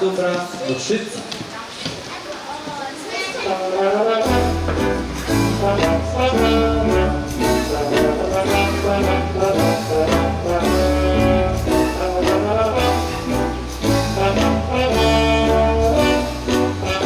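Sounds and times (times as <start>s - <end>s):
instrumental music with bass line: 4.2s - 17.0s.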